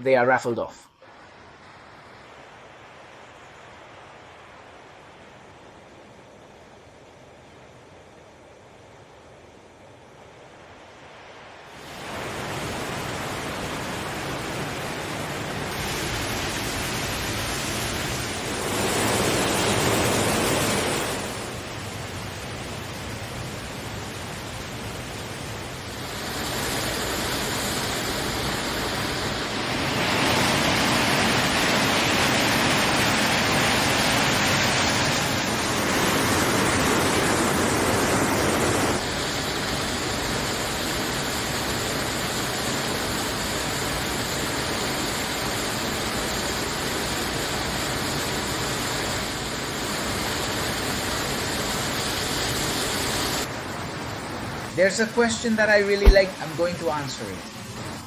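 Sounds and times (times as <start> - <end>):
waterfall rushing: 11.8 - 58.0.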